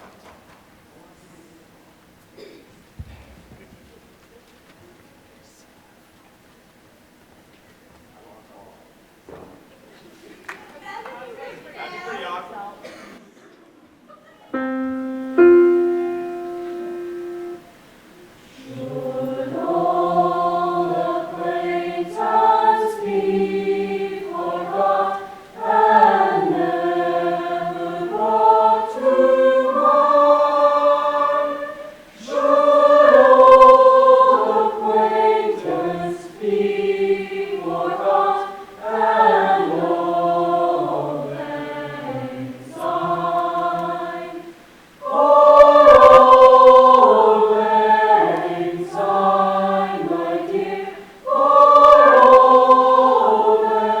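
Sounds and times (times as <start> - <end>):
choir singing in parts: 14.6 - 54.0.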